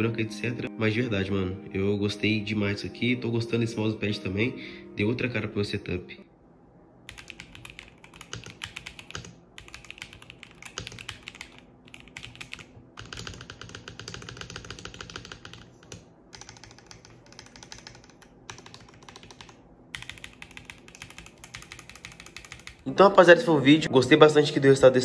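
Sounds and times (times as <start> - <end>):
mechanical keyboard keystrokes: 7.1 - 22.8.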